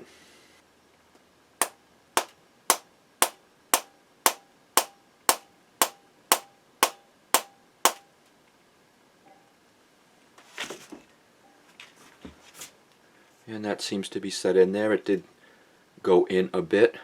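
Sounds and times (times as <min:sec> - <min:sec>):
mallet tapping metal: 0:01.6 - 0:08.0.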